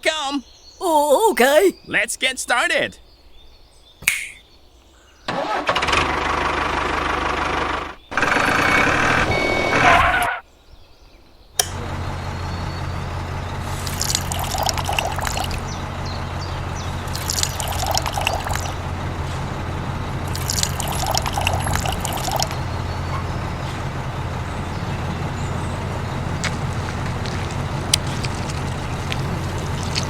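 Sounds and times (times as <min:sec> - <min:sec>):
liquid pouring and splashing: 0:13.8 - 0:15.6, 0:17.1 - 0:18.7, 0:20.3 - 0:22.5, 0:26.2 - 0:30.0.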